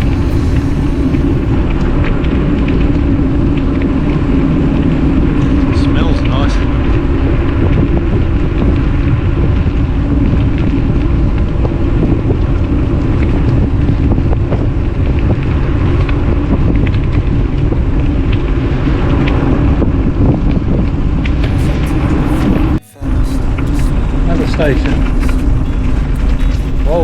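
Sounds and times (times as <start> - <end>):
wind buffeting microphone: 0.0 - 21.5.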